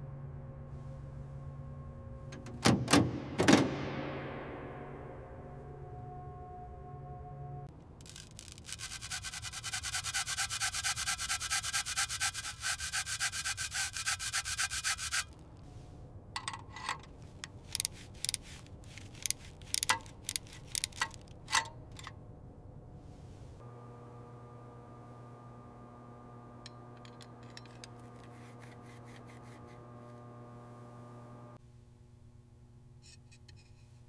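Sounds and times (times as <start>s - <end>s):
abrasive rubbing strokes: 8.0s - 15.9s, 17.2s - 21.1s, 27.7s - 30.0s.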